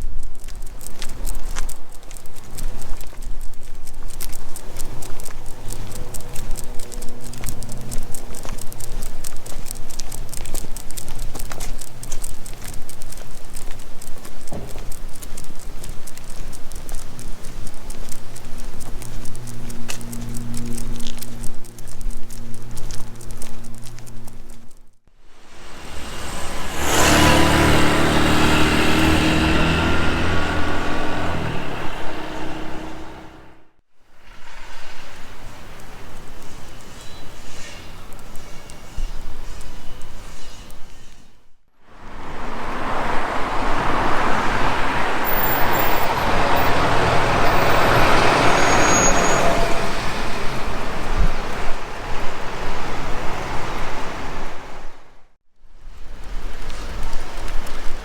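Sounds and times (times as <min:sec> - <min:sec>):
motor vehicle passing: 0:01.0 - 0:33.8, 0:41.9 - 0:55.3
road traffic rushing: 0:04.1 - 0:12.8, 0:14.5 - 0:24.6, 0:25.3 - 0:33.8, 0:41.8 - 0:55.3.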